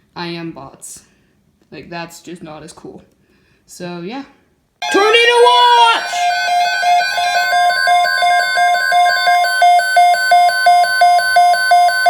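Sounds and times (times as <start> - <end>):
pulsing electronic alert beep: 4.8 - 12.0
steady warning alarm tone: 4.8 - 12.0.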